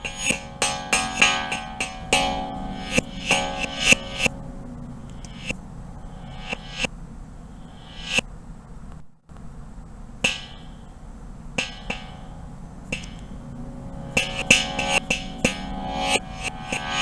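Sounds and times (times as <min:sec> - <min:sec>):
electronic struck notes: 0:00.0 - 0:08.3, 0:10.2 - 0:17.0.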